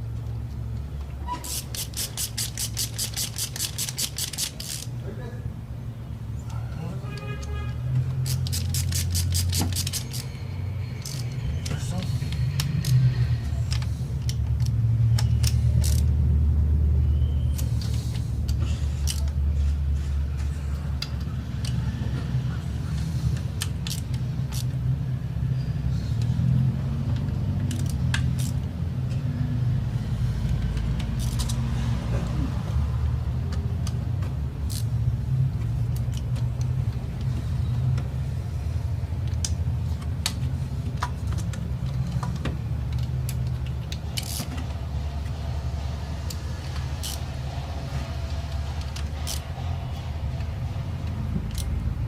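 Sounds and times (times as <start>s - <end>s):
metal tools clinking: 8.2s - 10.4s.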